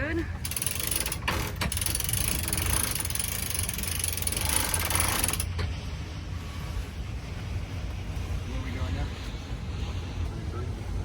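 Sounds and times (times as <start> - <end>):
winch pawls ratcheting: 0.4 - 5.5
steady low rumble: 1.7 - 11.0.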